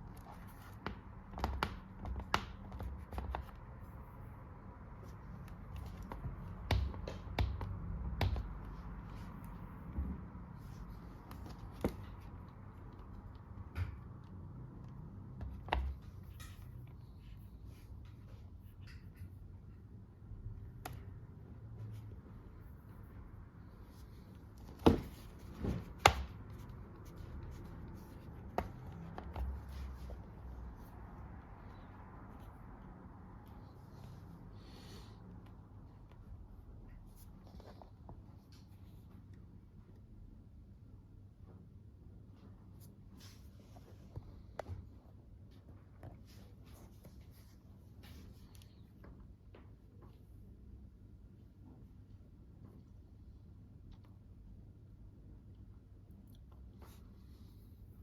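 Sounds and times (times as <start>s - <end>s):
low room hum: 0.0s - 58.0s
hands clicking and tapping: 0.2s - 3.8s, 5.4s - 8.7s.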